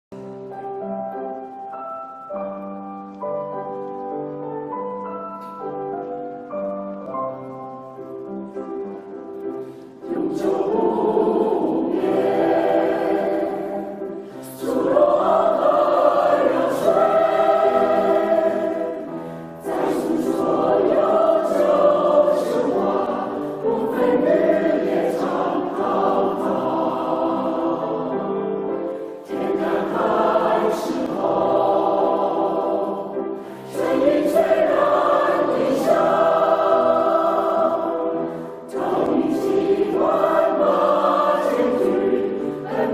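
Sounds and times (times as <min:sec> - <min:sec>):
choir singing: 0:09.8 - 0:42.9.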